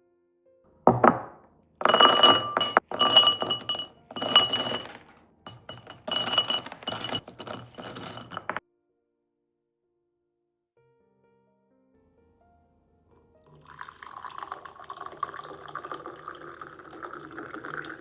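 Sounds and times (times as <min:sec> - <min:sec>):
glass clinking and ringing: 0:00.9 - 0:08.6.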